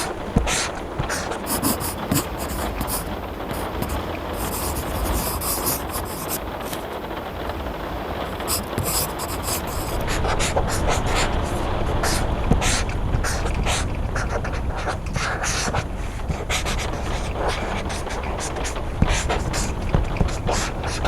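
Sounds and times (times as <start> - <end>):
pencil writing on paper: 0.0 - 6.8, 8.3 - 21.0
rain hiss: 0.0 - 21.0.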